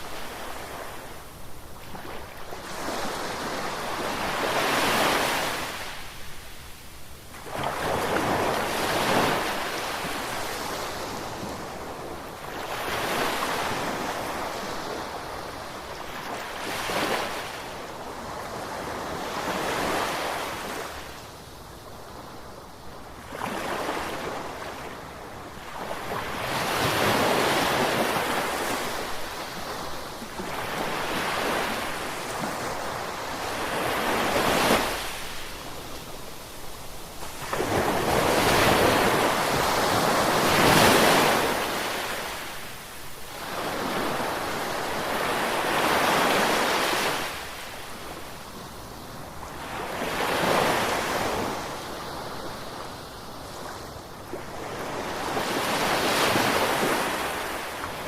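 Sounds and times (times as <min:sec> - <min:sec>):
ocean waves breaking on shore: 0:00.0 - 0:06.7, 0:22.6 - 0:58.0.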